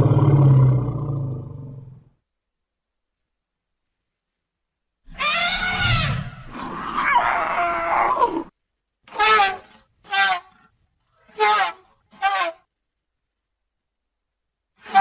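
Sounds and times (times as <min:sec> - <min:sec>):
elephant calls: 0:05.1 - 0:08.5.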